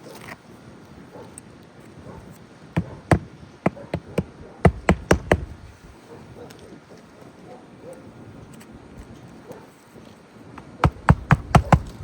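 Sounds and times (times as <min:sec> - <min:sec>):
hammer striking roof shingle: 0:02.8 - 0:05.7, 0:10.6 - 0:12.0.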